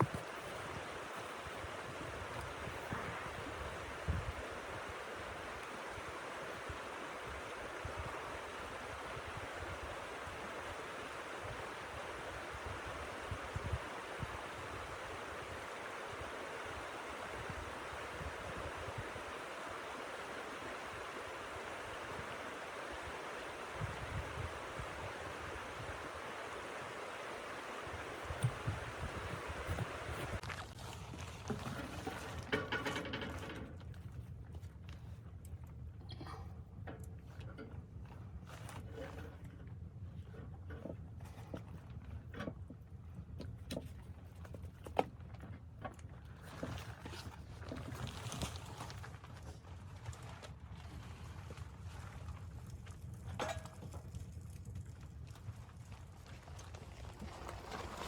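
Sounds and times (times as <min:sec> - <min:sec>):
wind buffeting microphone: 0:00.0 - 0:10.3, 0:22.0 - 0:27.0, 0:27.8 - 0:30.5.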